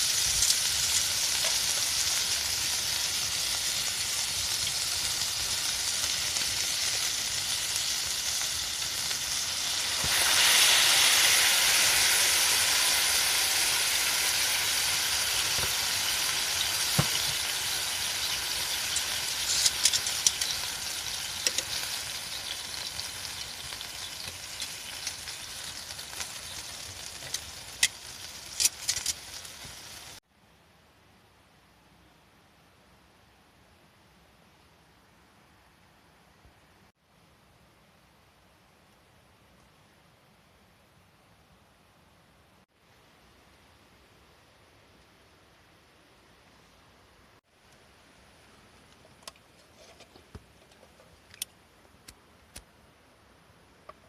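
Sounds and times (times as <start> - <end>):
food sizzling in a pan: 0.0 - 30.2.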